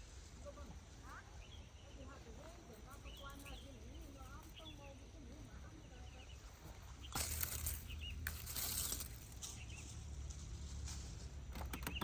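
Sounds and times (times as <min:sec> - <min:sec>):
small birds chirping: 0:00.4 - 0:10.4, 0:11.6 - 0:12.0
rustling: 0:07.0 - 0:11.5.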